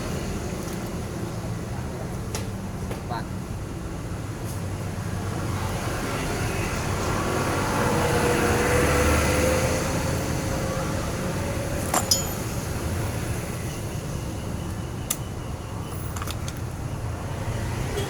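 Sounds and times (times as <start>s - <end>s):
metallic clink: 11.8s - 12.7s.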